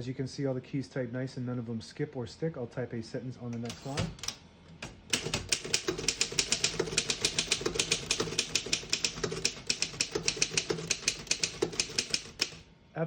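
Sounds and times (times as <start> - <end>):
manual typewriter typing: 3.6 - 12.6.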